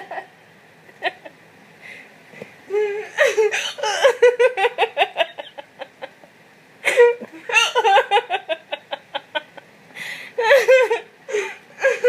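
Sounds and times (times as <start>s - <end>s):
girl laughing: 0.0s - 0.3s, 2.7s - 9.6s, 10.4s - 12.0s.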